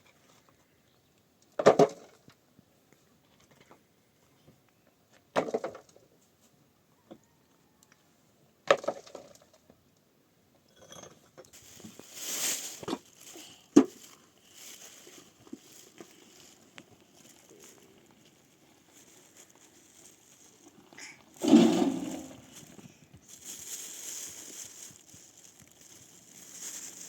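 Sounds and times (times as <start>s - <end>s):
rustling and scraping: 10.9s - 27.0s.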